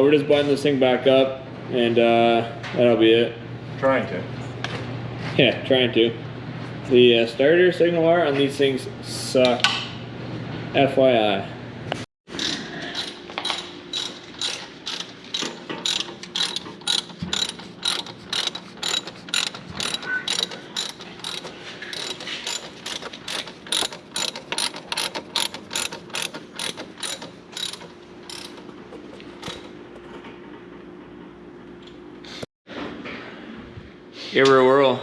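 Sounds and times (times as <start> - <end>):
ratchet wrench clicking: 12.4 - 28.7.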